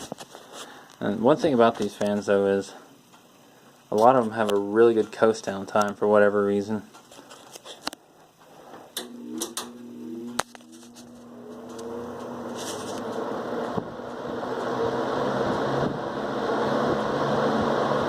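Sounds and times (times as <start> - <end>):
fan motor hum: 0.0 - 18.0
fan air whoosh: 8.6 - 18.0
fan switch clicks: 8.9 - 9.8.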